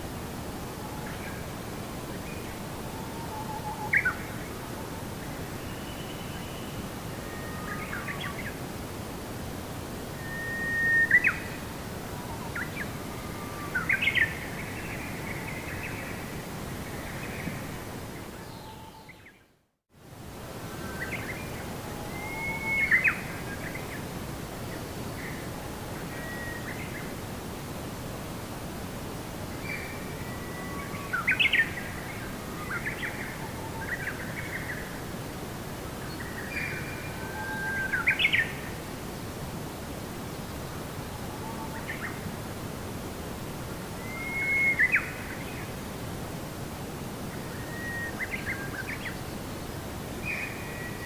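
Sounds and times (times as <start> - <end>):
outdoor ambience hiss: 0.0 - 51.0
bird calls and chirps: 44.0 - 45.7.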